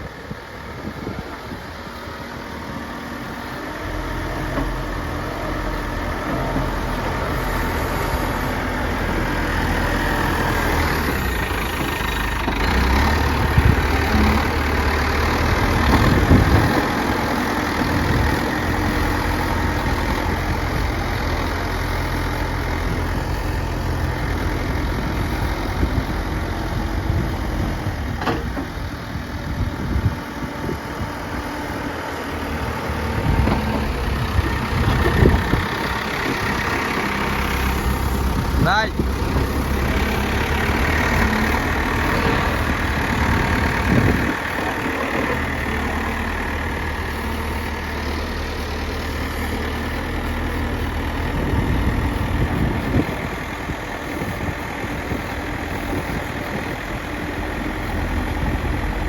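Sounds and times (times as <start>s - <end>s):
heavy machine engine running: 0.0s - 59.0s.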